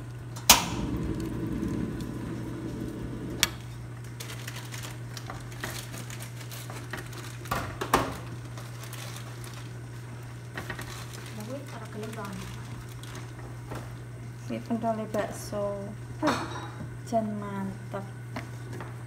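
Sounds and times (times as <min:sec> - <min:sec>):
steady low hum: 0:00.0 - 0:07.1.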